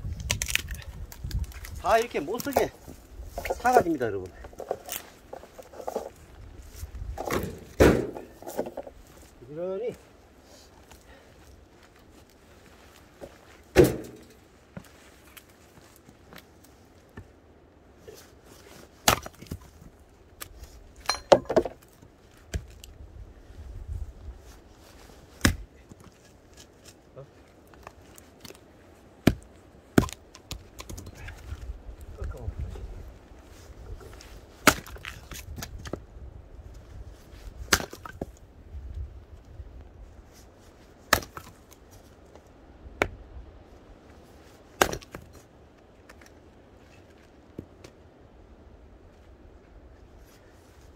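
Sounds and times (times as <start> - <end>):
firewood knocking and clattering: 0.2 - 6.3, 7.1 - 9.2, 13.2 - 14.9, 21.0 - 22.8, 30.0 - 31.6
wood chopping strikes: 7.2 - 8.9, 13.2 - 14.3, 19.0 - 19.7, 22.4 - 22.9, 25.4 - 27.0, 29.2 - 31.2, 34.6 - 36.0, 37.6 - 38.3, 41.1 - 41.7, 43.0 - 43.2, 44.8 - 45.4.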